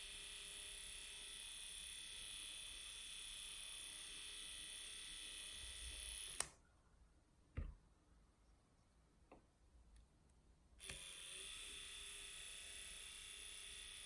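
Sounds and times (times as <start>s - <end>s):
electric whisk buzzing: 0.0s - 6.5s, 10.8s - 14.0s
whisk switch click: 6.4s - 6.6s.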